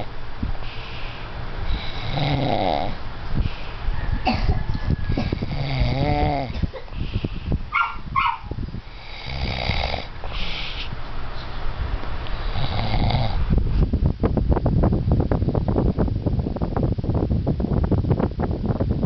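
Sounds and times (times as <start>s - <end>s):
person snoring: 1.7s - 3.0s, 5.3s - 6.6s, 8.9s - 10.7s, 12.4s - 13.4s.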